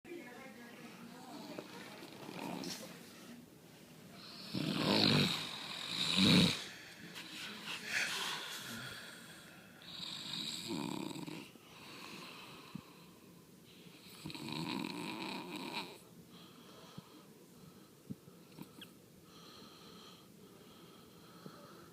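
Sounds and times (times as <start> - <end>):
rasping snores: 2.2 - 2.7, 4.2 - 6.7, 9.9 - 11.5, 14.1 - 16.0.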